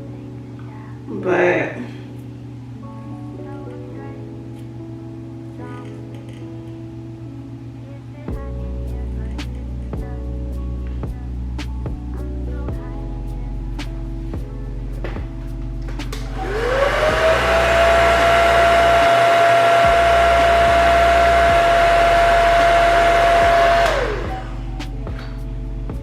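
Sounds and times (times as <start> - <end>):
hair dryer motor whine: 16.2 - 24.6.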